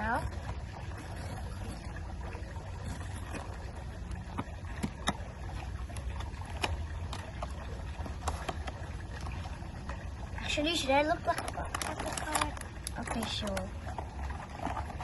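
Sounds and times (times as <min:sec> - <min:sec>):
packaging crinkling and tearing: 0:11.3 - 0:13.7.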